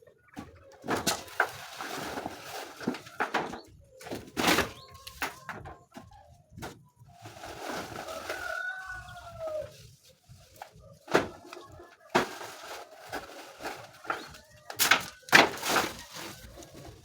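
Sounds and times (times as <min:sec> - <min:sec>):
chickens calling: 0:00.0 - 0:17.0.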